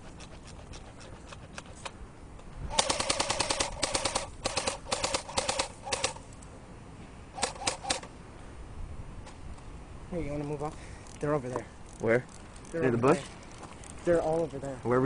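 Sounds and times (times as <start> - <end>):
airsoft gun firing bursts: 2.7 - 6.2, 7.4 - 8.1.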